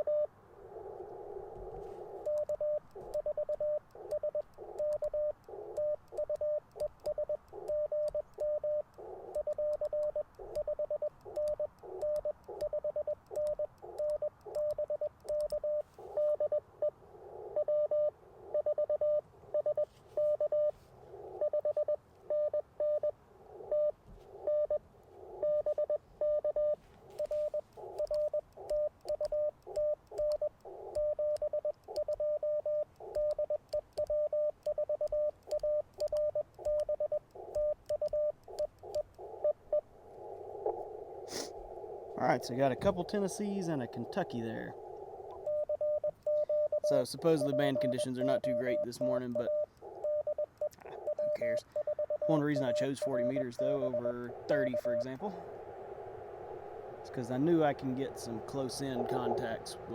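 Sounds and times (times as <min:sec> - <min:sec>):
morse code tone: 0:17.6 - 0:20.8, 0:25.4 - 0:39.6, 0:45.3 - 0:55.6, 0:56.7 - 0:59.9
radio static: 0:40.2 - 0:45.5, 0:46.8 - 0:59.9.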